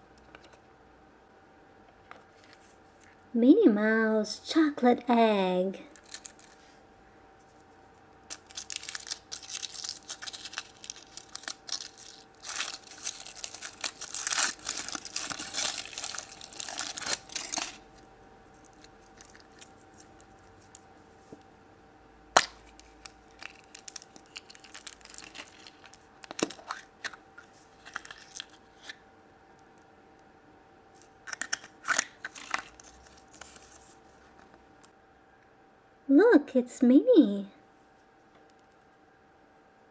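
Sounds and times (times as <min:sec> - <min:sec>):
foil wrapper crinkling and tearing: 0:05.9 - 0:06.6, 0:08.2 - 0:20.8, 0:22.4 - 0:29.0, 0:31.0 - 0:34.5.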